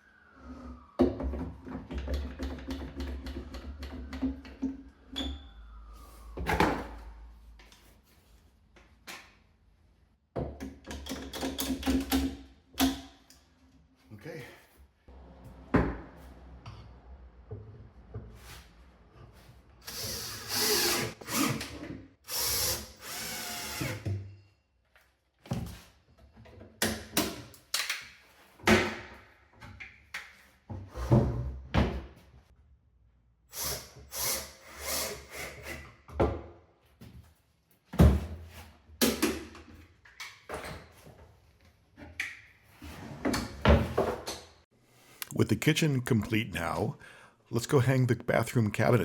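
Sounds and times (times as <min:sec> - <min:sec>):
power drill driving screws into wood: 0:19.9 - 0:24.1.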